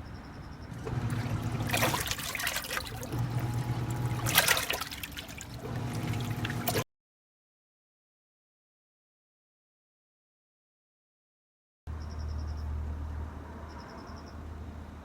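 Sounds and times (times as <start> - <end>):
steady low hum: 0.5 - 6.8
water splashing into washing machine: 0.7 - 6.8.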